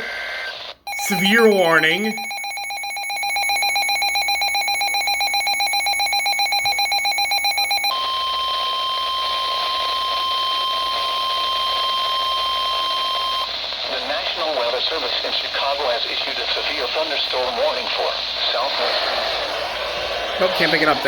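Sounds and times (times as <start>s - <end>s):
electronic alert tone: 1.0s - 2.6s.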